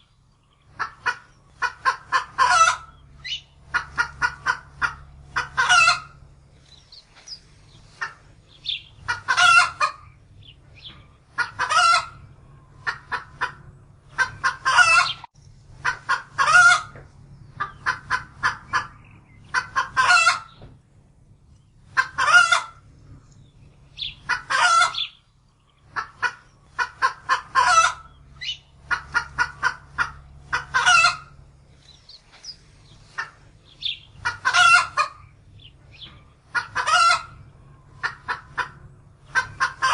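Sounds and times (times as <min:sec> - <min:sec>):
chicken clucking: 0:00.0 - 0:20.7, 0:21.6 - 0:39.9
chicken squawking: 0:00.7 - 0:06.2, 0:07.2 - 0:10.1, 0:11.3 - 0:17.0, 0:17.6 - 0:20.6, 0:21.9 - 0:22.8, 0:24.0 - 0:25.2, 0:26.0 - 0:31.4, 0:32.2 - 0:35.6, 0:36.4 - 0:39.9.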